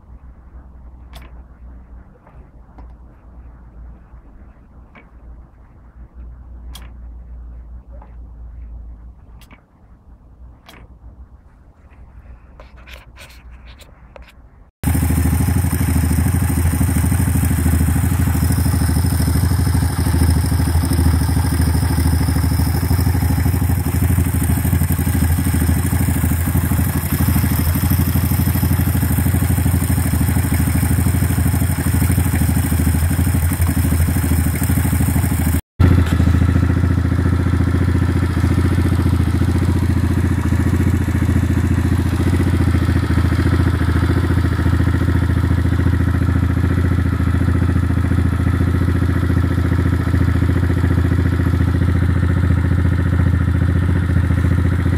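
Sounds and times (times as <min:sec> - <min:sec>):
engine clattering: 0:14.8 - 0:54.9
motorcycle engine idling: 0:14.8 - 0:54.9.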